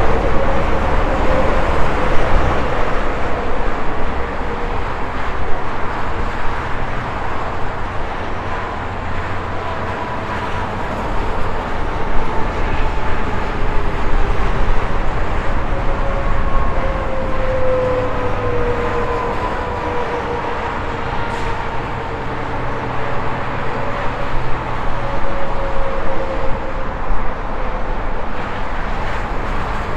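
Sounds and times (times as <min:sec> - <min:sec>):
highway traffic passing: 0:00.0 - 0:29.9.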